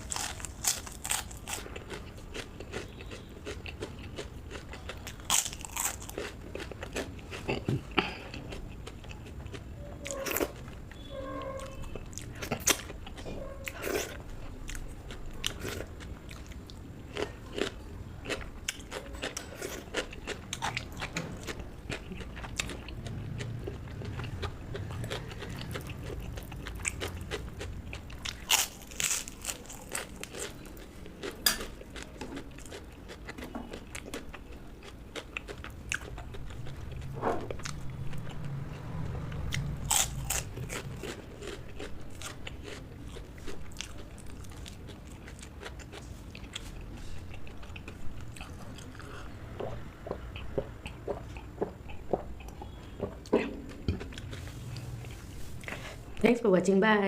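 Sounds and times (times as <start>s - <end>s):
chewing crisp food: 0.0s - 56.2s.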